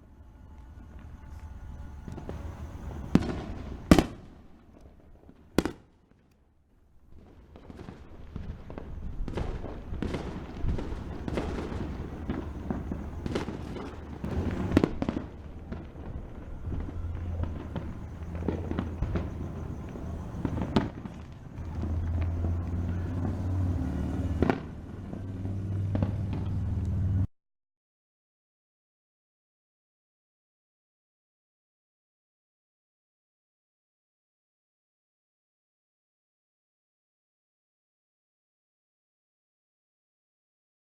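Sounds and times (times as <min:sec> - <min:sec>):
fireworks bangs and pops: 0:02.0 - 0:06.4, 0:07.1 - 0:26.7
low rumble: 0:10.4 - 0:20.8, 0:21.5 - 0:27.3.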